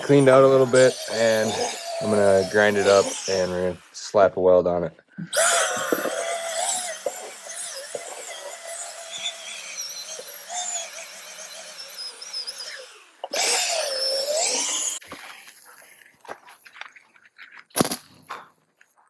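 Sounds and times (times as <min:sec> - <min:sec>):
angle grinder whining: 0:00.0 - 0:04.1, 0:05.3 - 0:15.5.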